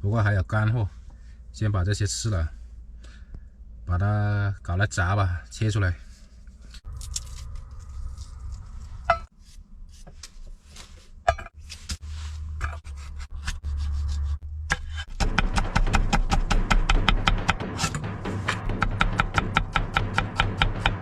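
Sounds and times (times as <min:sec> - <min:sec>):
low steady hum: 0:00.0 - 0:20.9
clinks and knocks: 0:09.0 - 0:09.3, 0:11.3 - 0:11.6
knife scraping and cutting chicken: 0:11.9 - 0:15.2
background music with quick beat: 0:15.2 - 0:21.0.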